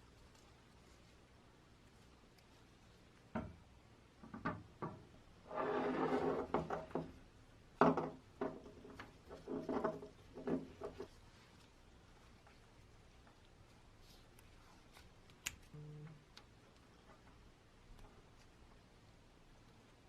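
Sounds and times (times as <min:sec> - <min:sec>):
short scraping rub: 0:05.5 - 0:06.6.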